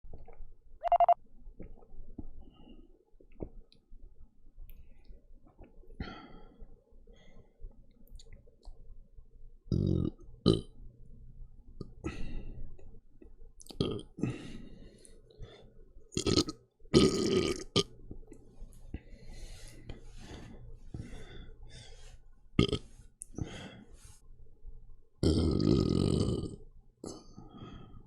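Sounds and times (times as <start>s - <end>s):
person burping: 9.7s - 10.7s, 13.7s - 14.2s, 16.2s - 18.0s, 22.6s - 22.8s, 25.2s - 27.3s.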